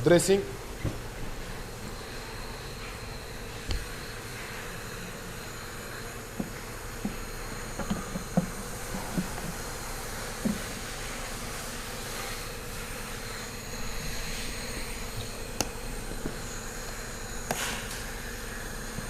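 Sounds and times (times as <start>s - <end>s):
steady buzzing hum: 0.0s - 19.0s.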